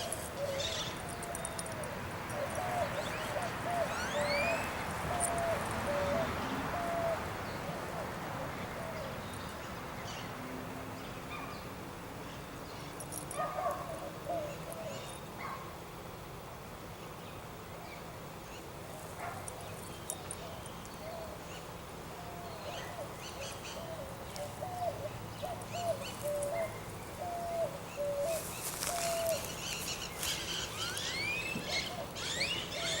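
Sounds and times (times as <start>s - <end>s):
birds chirping: 0.0s - 10.4s, 17.0s - 33.0s.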